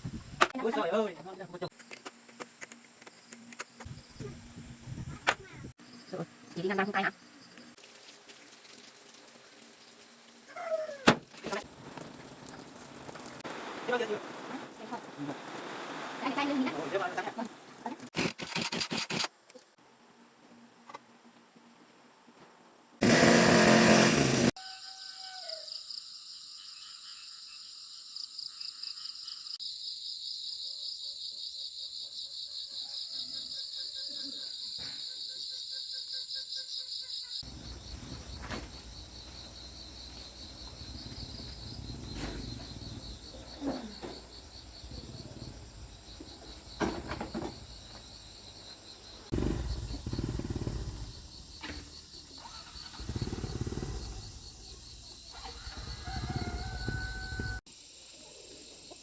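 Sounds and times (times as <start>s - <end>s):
insects chirping: 24.6s - 59.0s.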